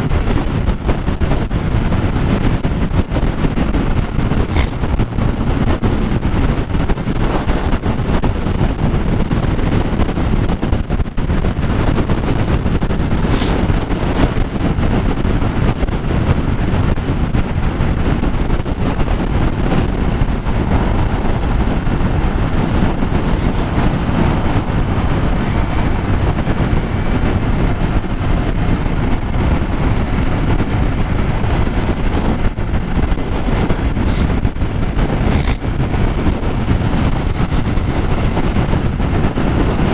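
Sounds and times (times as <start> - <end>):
motorcycle engine: 0.0 - 39.9
road noise: 0.0 - 39.9
wind buffeting microphone: 0.0 - 39.9.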